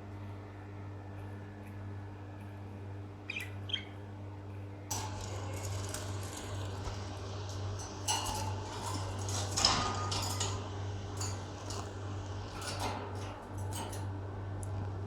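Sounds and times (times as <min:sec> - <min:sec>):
bird chirps: 0:03.3 - 0:04.0.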